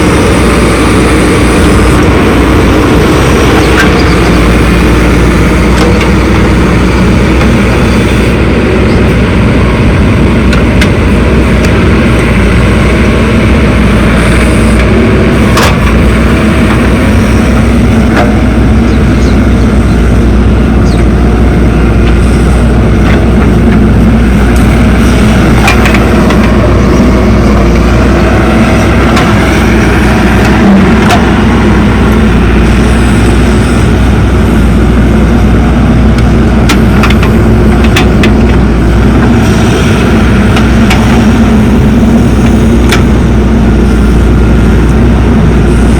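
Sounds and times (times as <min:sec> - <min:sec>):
diesel engines running: 0:00.0 - 0:45.9
sharp knocks and clicks: 0:36.2 - 0:38.6.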